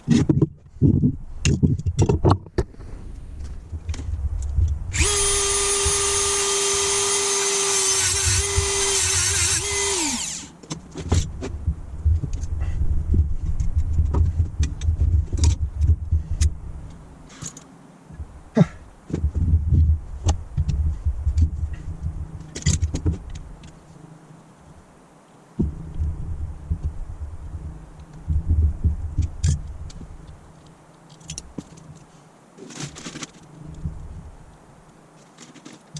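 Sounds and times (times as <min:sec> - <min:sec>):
scattered clicks and knocks: 0:00.0 - 0:02.7
small power tool motor running: 0:04.9 - 0:10.5.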